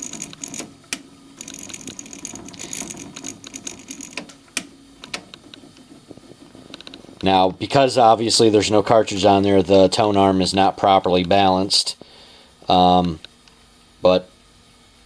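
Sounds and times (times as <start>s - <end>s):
sharp mechanical clicks: 0.0s - 5.6s
turntable mechanism whirring: 0.0s - 11.6s.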